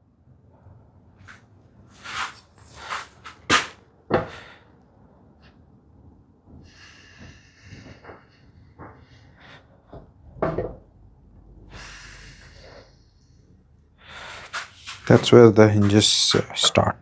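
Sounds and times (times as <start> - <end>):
quick swishing strokes: 2.0 - 3.8, 14.4 - 16.2.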